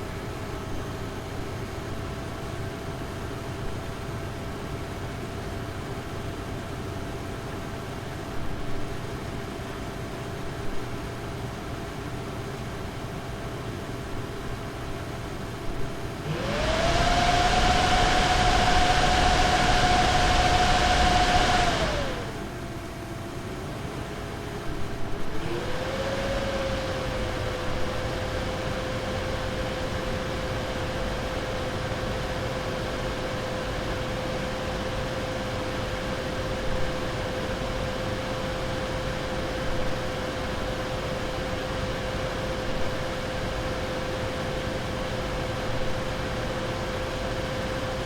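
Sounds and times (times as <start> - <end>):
graphics card fans whining: 16.0 - 32.2
graphics card fans rushing: 16.2 - 22.8.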